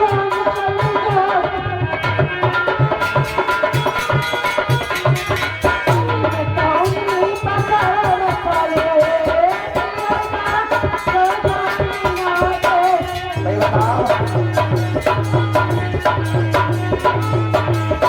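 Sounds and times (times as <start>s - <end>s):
hand drum beats: 0.0s - 18.0s
wavering melody: 9.5s - 18.0s.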